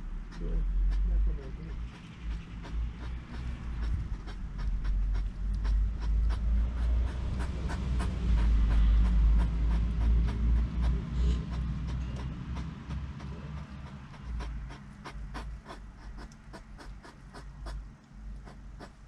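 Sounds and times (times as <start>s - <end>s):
loud low rumble: 0.0s - 16.0s
snuffling breaths: 2.6s - 17.8s.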